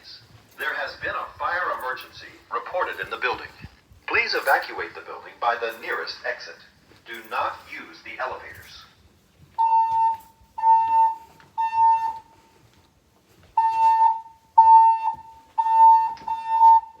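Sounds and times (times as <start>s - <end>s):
evacuation alarm beeps: 9.6s - 12.3s, 13.6s - 17.0s.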